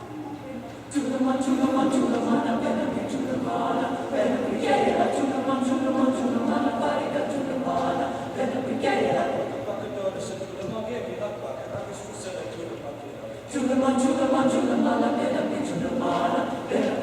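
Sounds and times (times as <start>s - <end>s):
choir singing a cappella: 0.8s - 10.3s, 13.5s - 17.0s.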